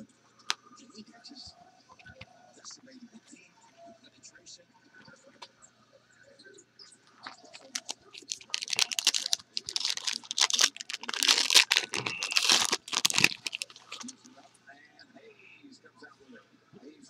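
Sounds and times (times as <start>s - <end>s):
plastic wrapping crinkling and tearing: 7.3s - 14.3s.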